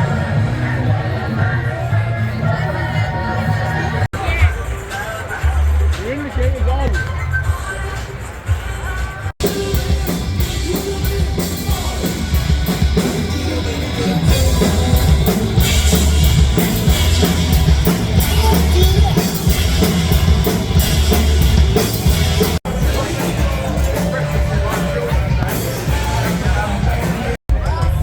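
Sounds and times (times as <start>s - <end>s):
drum kit beat: 3.8s - 28.0s
rock band playing: 8.3s - 28.0s.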